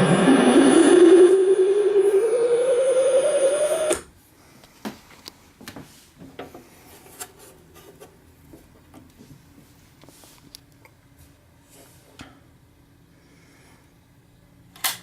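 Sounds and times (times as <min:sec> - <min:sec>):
record player playback: 0:00.0 - 0:04.1.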